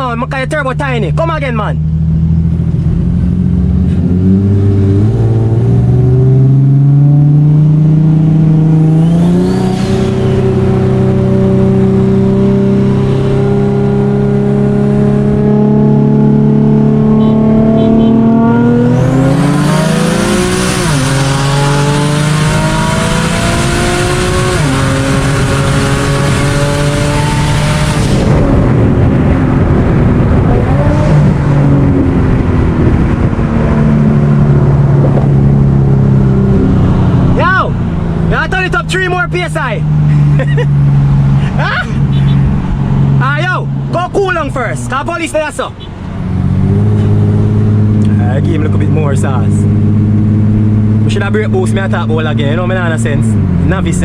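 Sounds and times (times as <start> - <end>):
car engine accelerating hard: 1.8 - 54.0.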